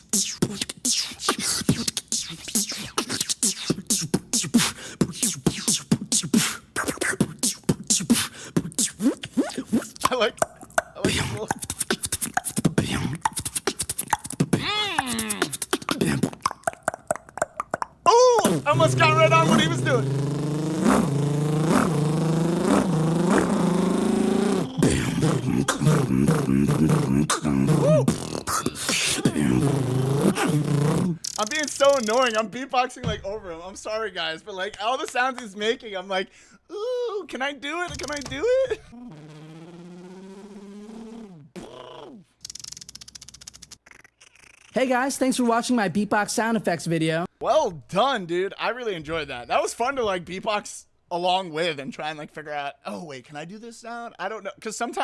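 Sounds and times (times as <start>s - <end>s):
person imitating car engine vocally: 0.0s - 32.3s, 38.0s - 42.2s
beatboxing: 0.0s - 32.4s, 37.9s - 44.8s.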